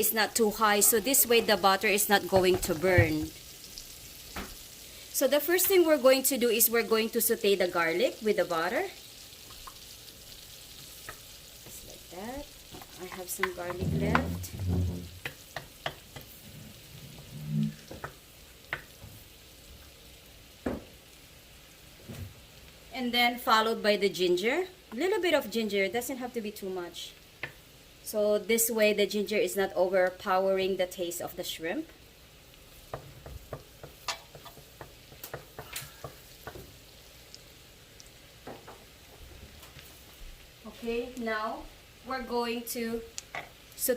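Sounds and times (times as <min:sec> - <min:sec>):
garlic sizzling in butter: 0:00.0 - 0:43.9
utensil clicking against pan: 0:12.8 - 0:14.3, 0:32.9 - 0:36.6.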